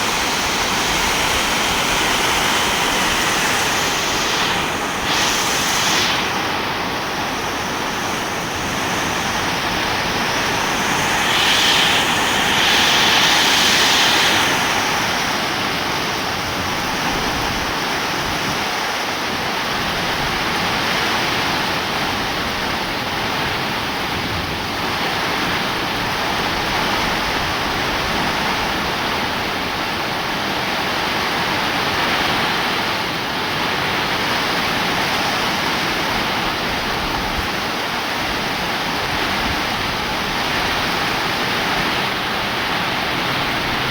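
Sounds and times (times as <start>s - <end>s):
heavy rain falling: 0.0s - 17.4s.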